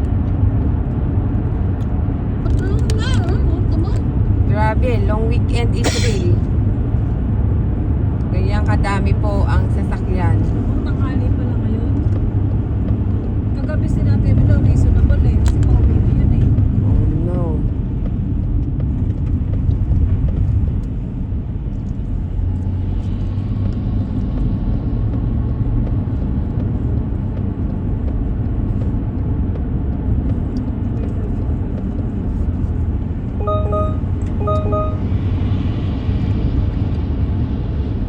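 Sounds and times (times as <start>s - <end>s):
car driving rumble: 0.0s - 38.0s
short pitched beeps: 33.4s - 35.1s.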